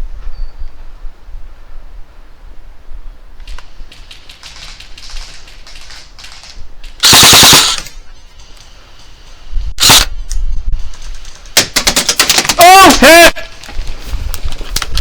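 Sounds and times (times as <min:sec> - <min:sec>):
airsoft guns firing: 0:04.3 - 0:07.9
full-auto gunfire bursts: 0:07.0 - 0:07.8.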